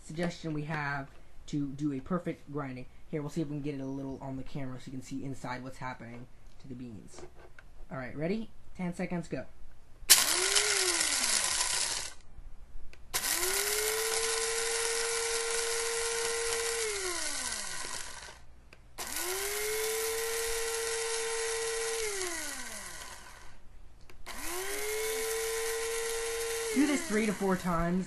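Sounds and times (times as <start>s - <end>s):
coffee grinder motor whine: 10.1s - 12.2s, 13.2s - 18.4s, 19.0s - 23.6s, 24.3s - 28.0s.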